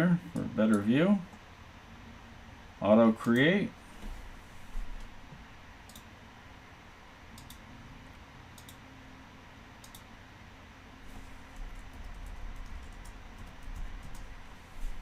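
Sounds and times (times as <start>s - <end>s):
computer mouse clicking: 5.8s - 6.1s, 7.4s - 7.6s, 8.5s - 8.8s, 9.8s - 10.1s, 11.5s - 14.3s.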